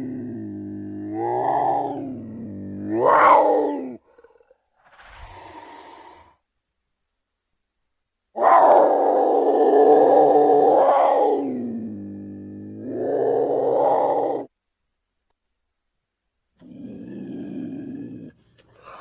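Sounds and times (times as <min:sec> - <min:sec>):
big cat roaring: 0:00.0 - 0:04.5, 0:08.4 - 0:14.5, 0:16.6 - 0:19.0
big cat breathy hiss: 0:04.8 - 0:06.4.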